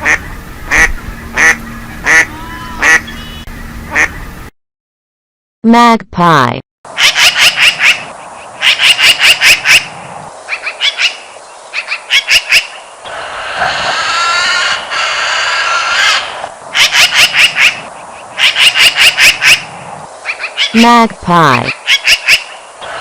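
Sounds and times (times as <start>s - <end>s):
magpie chattering: 21.5s - 22.6s.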